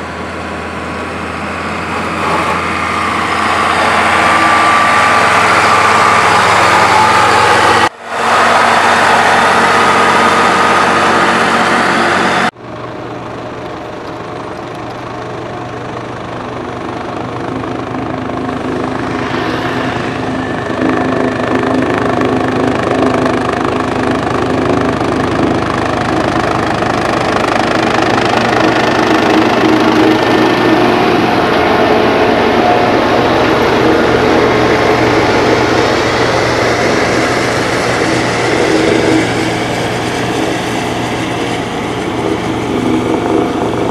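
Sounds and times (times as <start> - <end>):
heavy construction machine engines: 0.0 - 43.9.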